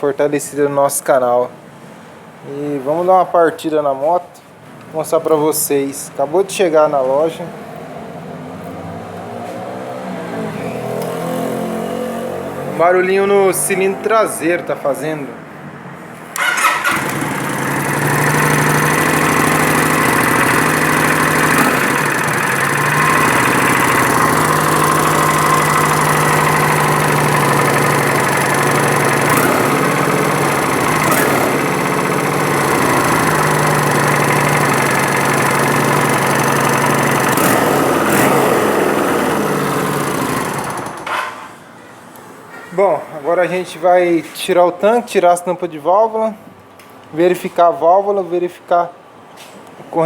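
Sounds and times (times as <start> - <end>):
motorcycle engine idling: 16.4 - 41.1.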